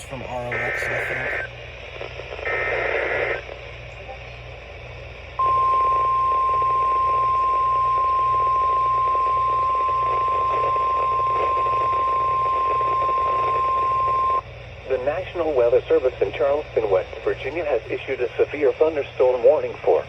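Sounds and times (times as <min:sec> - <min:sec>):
steady alarm tone: 0:00.0 - 0:01.6, 0:05.4 - 0:14.4
radio hiss: 0:00.0 - 0:08.2, 0:09.0 - 0:20.0.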